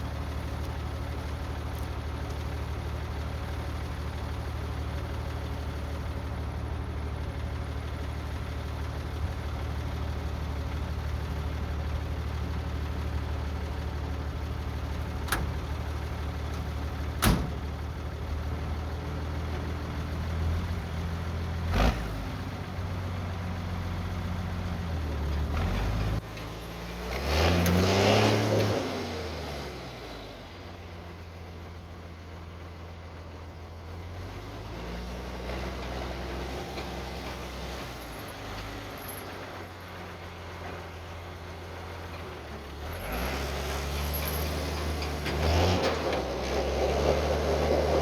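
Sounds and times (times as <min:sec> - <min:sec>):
diesel engine idling: 0:00.0 - 0:26.6.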